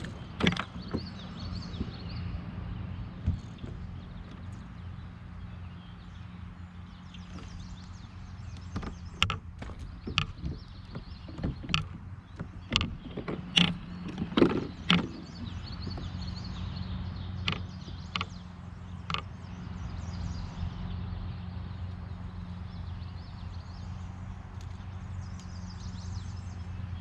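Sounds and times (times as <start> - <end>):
sharp knocks and clicks: 0.0 - 2.3, 3.1 - 4.8, 7.0 - 19.7.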